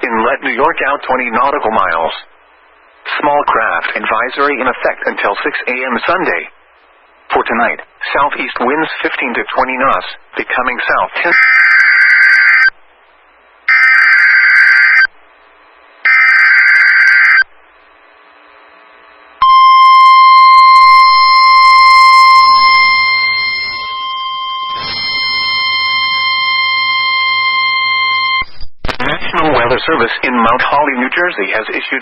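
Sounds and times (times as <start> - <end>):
steady high alarm tone: 11.3 - 12.7, 13.7 - 15.1, 16.0 - 17.5, 19.4 - 28.5.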